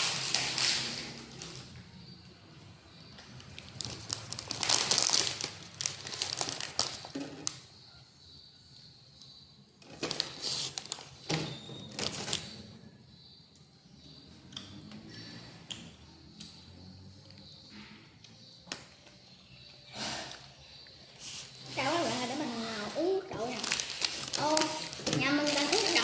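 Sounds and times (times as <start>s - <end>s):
food packaging crinkling: 3.5s - 7.6s, 9.9s - 11.2s, 23.5s - 26.0s.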